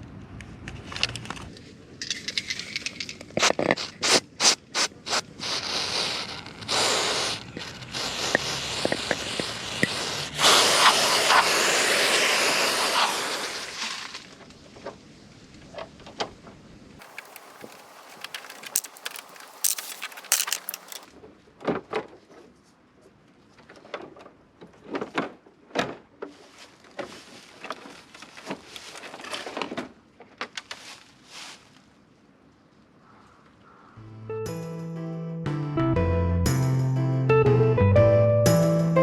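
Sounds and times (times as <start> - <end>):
tools clicking and clinking: 2.0 - 3.8, 17.0 - 21.1.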